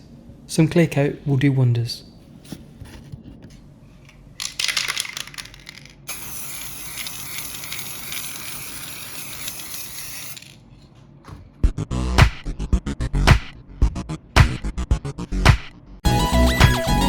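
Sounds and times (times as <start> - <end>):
spray can ball rattling: 4.4 - 10.6.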